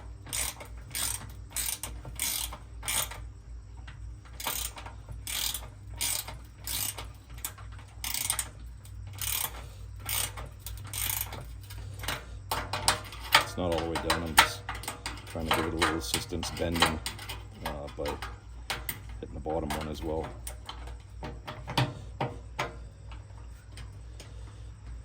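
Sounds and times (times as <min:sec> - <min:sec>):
ratchet wrench clicking: 0:00.1 - 0:24.0.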